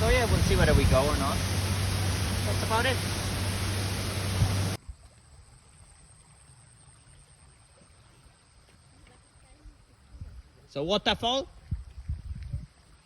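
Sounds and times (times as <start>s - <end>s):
waterfall rushing: 0.0s - 4.8s.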